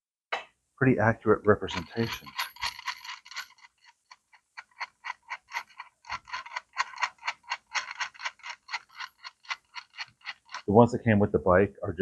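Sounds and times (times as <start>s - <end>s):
ratchet wrench clicking: 1.7s - 10.7s.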